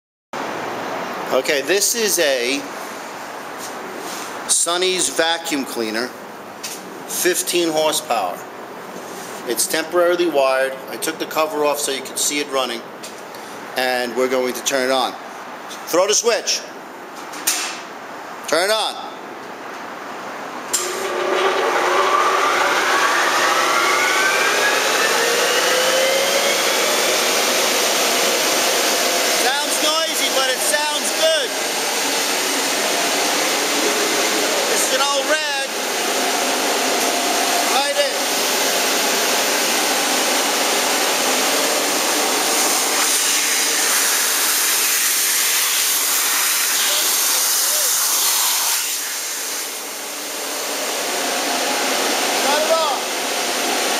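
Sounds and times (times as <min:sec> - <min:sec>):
loud rush of air: 0:00.4 - 0:04.7, 0:20.0 - 0:53.9
vacuum motor whine: 0:20.8 - 0:53.9.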